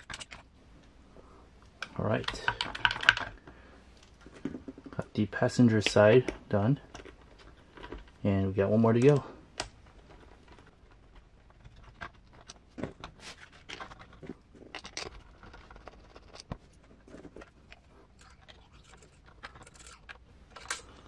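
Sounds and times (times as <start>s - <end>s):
small tools clicking and tapping: 1.8s - 5.0s.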